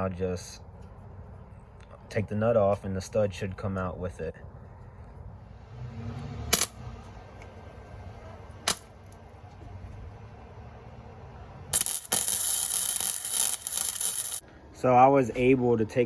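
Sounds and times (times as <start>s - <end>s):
electric welder arc: 11.8s - 14.4s.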